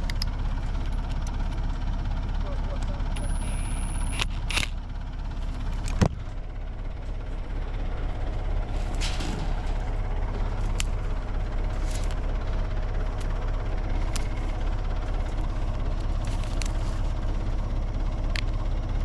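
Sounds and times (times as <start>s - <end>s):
backhoe engine idling: 0.0s - 19.0s.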